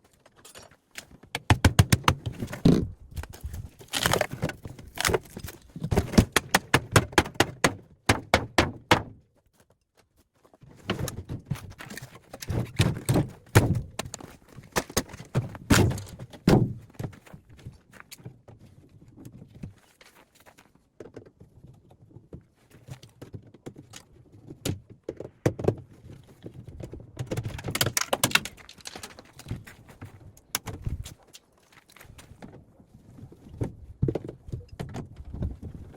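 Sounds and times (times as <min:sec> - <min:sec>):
knocks and clatter of fridge parts: 0:01.2 - 0:02.9, 0:03.5 - 0:09.2, 0:10.9 - 0:17.7.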